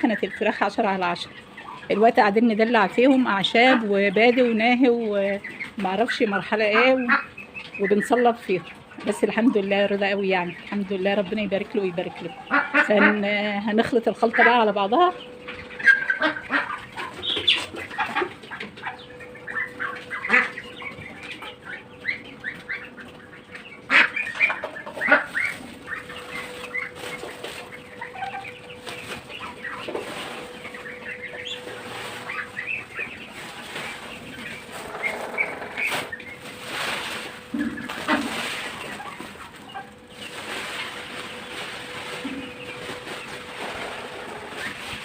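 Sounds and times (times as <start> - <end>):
chickens clucking: 0.0 - 45.0.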